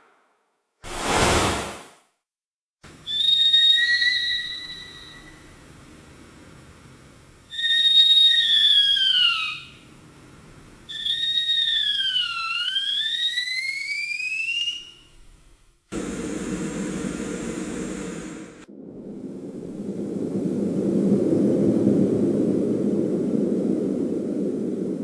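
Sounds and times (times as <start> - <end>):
steady hiss: 15.9 - 18.7.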